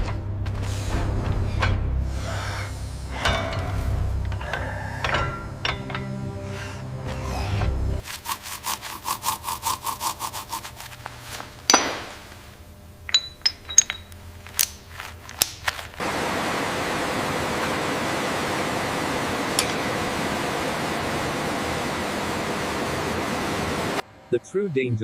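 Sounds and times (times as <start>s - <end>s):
loud metal clank: 3.1s - 6.3s.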